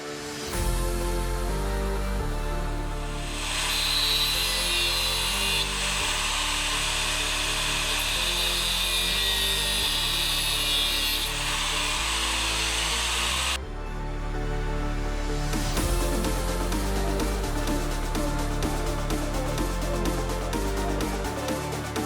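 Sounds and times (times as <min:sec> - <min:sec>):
background music: 0:00.0 - 0:22.0
power tool cutting steel pipe: 0:02.9 - 0:13.6.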